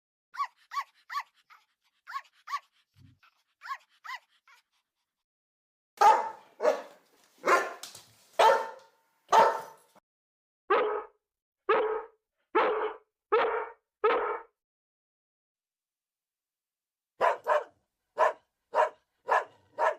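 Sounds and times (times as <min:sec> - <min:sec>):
dog barking: 0:06.0 - 0:07.8, 0:08.4 - 0:10.0, 0:10.7 - 0:14.5, 0:17.2 - 0:19.9.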